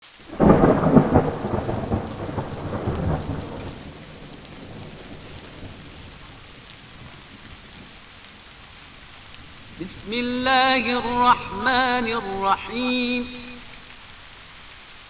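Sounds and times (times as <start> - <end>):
steady rain falling: 0.0 - 15.0
thunder rumbling: 0.2 - 8.0.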